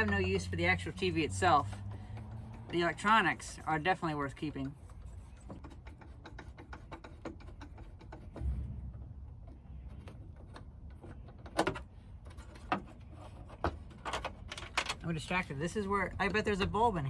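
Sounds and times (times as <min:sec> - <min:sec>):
low thump: 0:08.4 - 0:09.3
plastic and metal parts clicking: 0:09.9 - 0:15.1.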